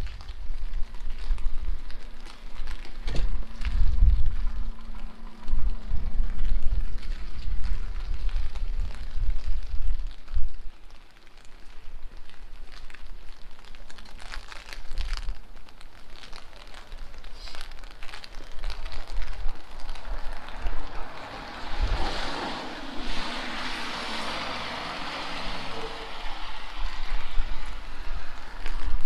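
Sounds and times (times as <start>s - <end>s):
wind buffeting microphone: 0.0s - 10.7s, 17.0s - 29.0s
rain on wet street: 0.0s - 29.0s
vehicle tyres hissing on wet road: 0.0s - 29.0s.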